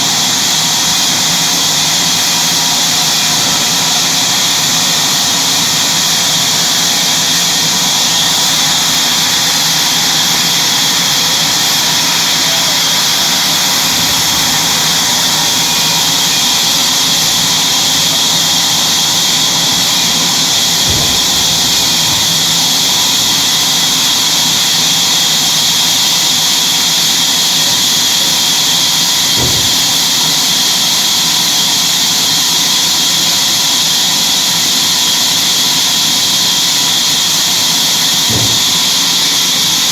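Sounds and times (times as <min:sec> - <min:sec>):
sawmill machinery hissing: 0:00.0 - 0:39.9
low thumps: 0:19.2 - 0:24.4, 0:29.3 - 0:30.7, 0:38.3 - 0:39.5.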